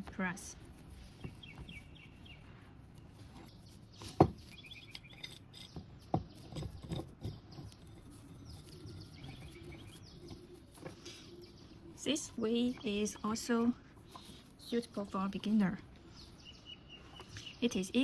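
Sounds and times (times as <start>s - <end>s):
faint birds chirping: 0.1s - 18.0s.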